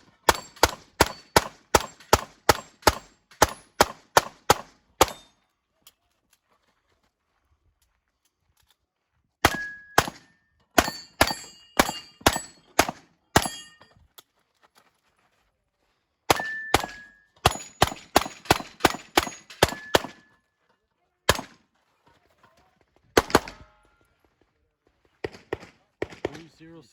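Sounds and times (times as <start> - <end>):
metallic ring of steel targets: 0.2 - 3.8, 5.0 - 5.4, 9.5 - 14.0, 16.3 - 20.4
pistol shots: 0.2 - 5.3, 9.4 - 13.6, 16.3 - 20.3, 21.3 - 21.6, 23.2 - 23.8, 25.2 - 26.5.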